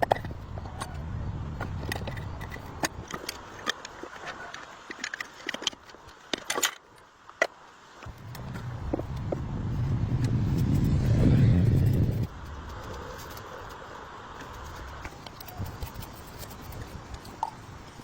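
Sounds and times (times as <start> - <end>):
low rumble: 8.0 - 13.2.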